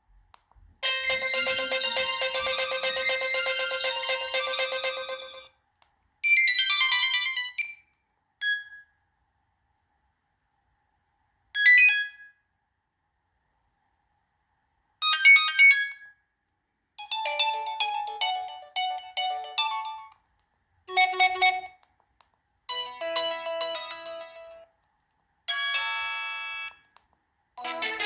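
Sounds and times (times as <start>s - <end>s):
phone ringtone melodies: 0.8s - 5.5s, 6.4s - 7.7s, 17.0s - 20.2s, 20.9s - 21.8s, 22.7s - 24.7s, 25.5s - 26.8s, 27.6s - 28.0s.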